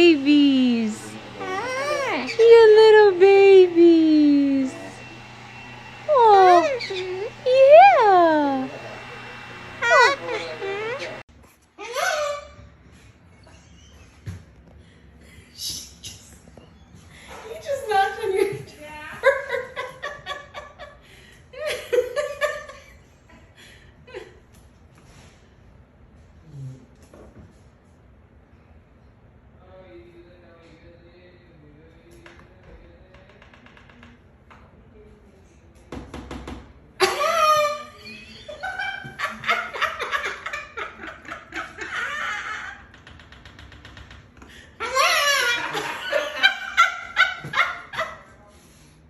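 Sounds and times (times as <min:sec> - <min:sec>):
wavering high cry: 0:00.8 - 0:03.2, 0:06.1 - 0:09.0, 0:09.8 - 0:11.2
person laughing: 0:09.8 - 0:11.2.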